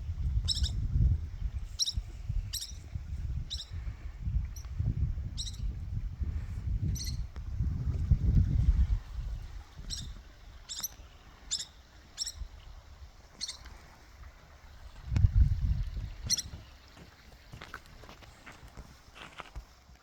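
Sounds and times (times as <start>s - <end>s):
small bird chirping: 0.3s - 5.8s, 6.9s - 7.3s, 9.2s - 13.8s, 16.0s - 17.0s.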